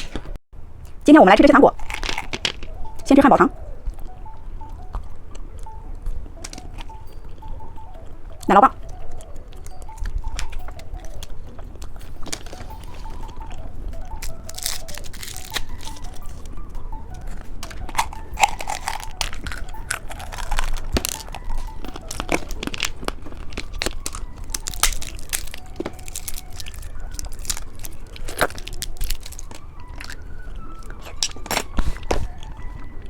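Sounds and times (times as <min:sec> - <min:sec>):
crunching candy: 0:01.7 - 0:33.0
wrapper crinkling: 0:01.8 - 0:03.0, 0:09.6 - 0:32.4.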